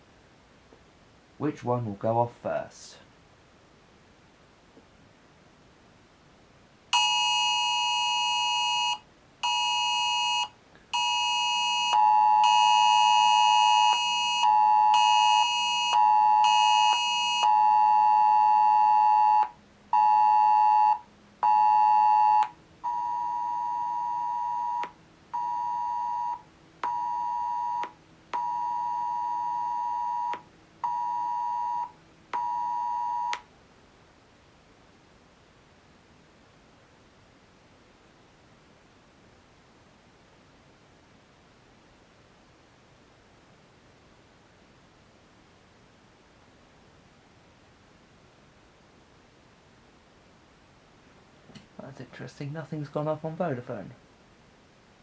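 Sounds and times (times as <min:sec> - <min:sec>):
phone emergency alert alarm: 0:07.0 - 0:33.4.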